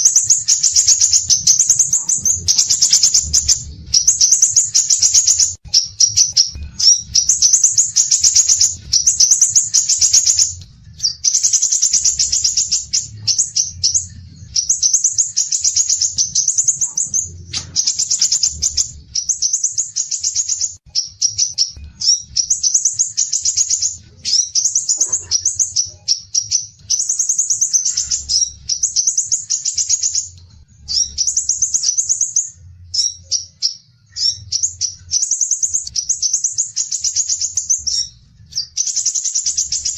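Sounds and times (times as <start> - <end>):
songbird chattering song: 0.0 - 39.9.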